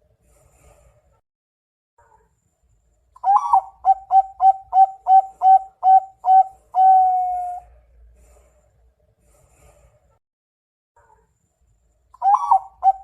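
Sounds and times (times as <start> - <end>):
dove cooing: 3.2 - 7.8, 12.2 - 13.0.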